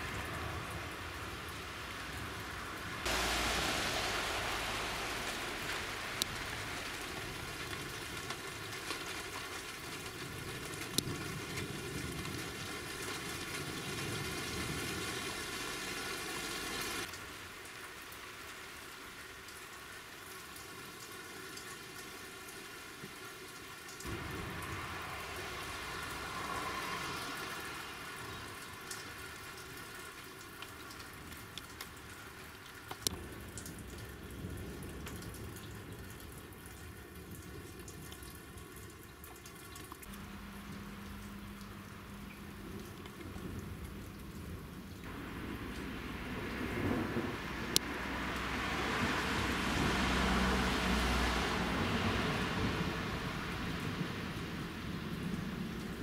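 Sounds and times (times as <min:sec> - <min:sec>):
rain falling: 0:00.0 - 0:56.0
sharp raindrop ticks: 0:03.0 - 0:14.8, 0:28.2 - 0:47.0, 0:47.7 - 0:48.6.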